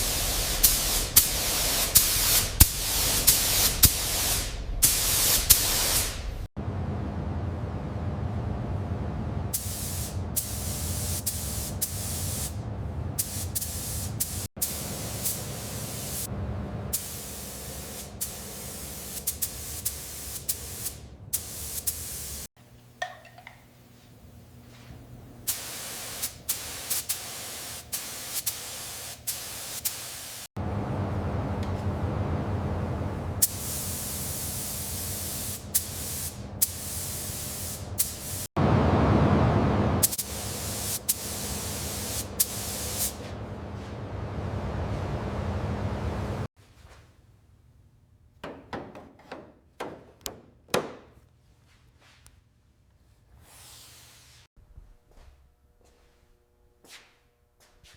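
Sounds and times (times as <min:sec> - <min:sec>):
spray paint hissing: 0:00.0 - 0:06.5, 0:09.6 - 0:12.6, 0:13.2 - 0:16.3, 0:16.9 - 0:22.5, 0:25.4 - 0:30.5, 0:33.4 - 0:38.5, 0:40.0 - 0:43.3.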